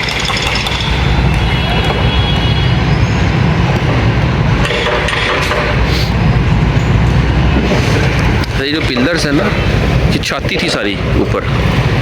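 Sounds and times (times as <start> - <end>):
metallic clinks and knocks: 0.0 - 1.1.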